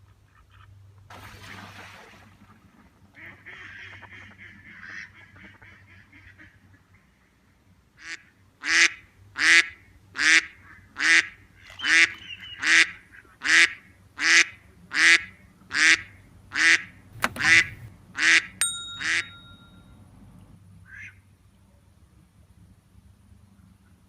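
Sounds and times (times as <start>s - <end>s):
duck quacking: 3.2s - 7.0s, 8.0s - 18.5s
sharp click: 17.2s - 17.9s.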